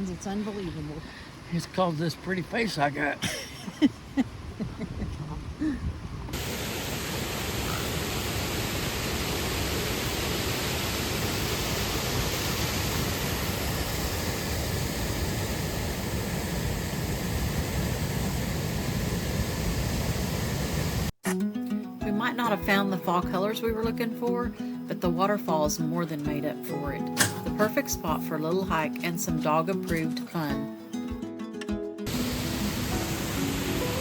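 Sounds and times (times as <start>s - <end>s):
waterfall rushing: 6.3s - 16.1s, 32.1s - 34.0s.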